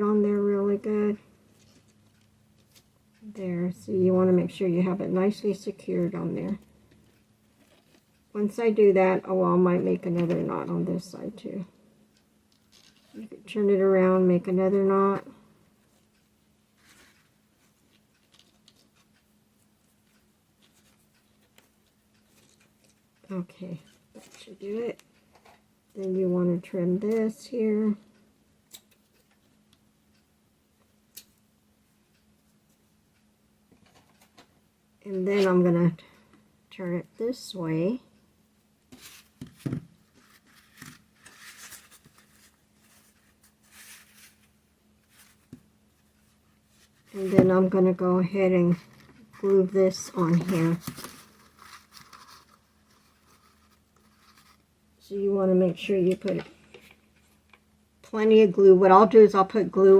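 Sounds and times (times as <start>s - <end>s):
faint low hum: 0.0s - 59.9s
faint rustling: 38.9s - 54.7s.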